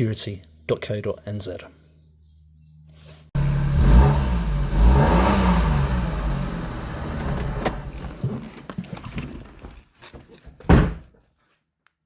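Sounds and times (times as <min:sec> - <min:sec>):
car engine revving: 0:03.4 - 0:08.4.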